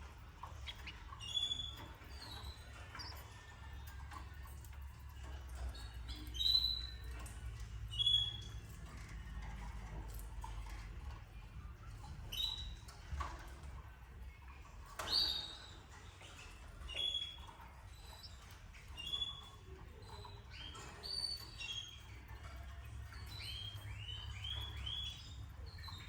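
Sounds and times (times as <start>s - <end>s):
canaries chirping: 0.0s - 26.0s.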